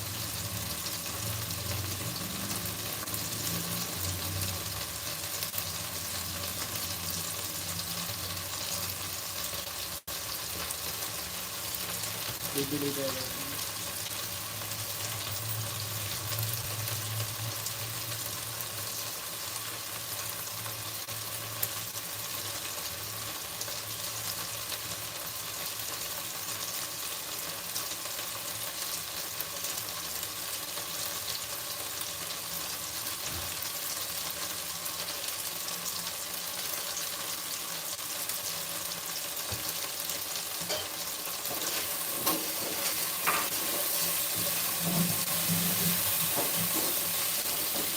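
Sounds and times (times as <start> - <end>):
food sizzling in hot oil: 0.0 - 47.9.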